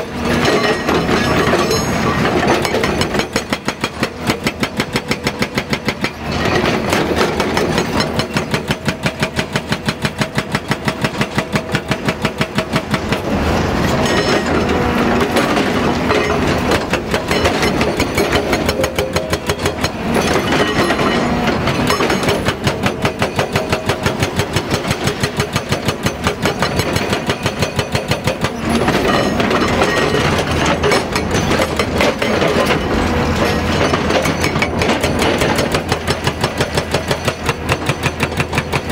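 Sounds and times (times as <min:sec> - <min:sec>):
hydraulic rock breaker hammering: 0:00.0 - 0:38.9
diesel engine running: 0:12.6 - 0:26.6, 0:28.3 - 0:38.9.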